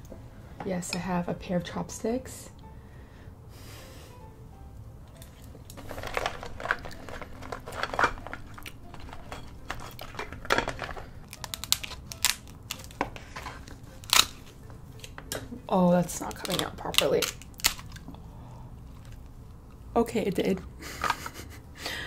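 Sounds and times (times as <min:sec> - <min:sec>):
crab shell cracking: 0:05.1 - 0:18.2.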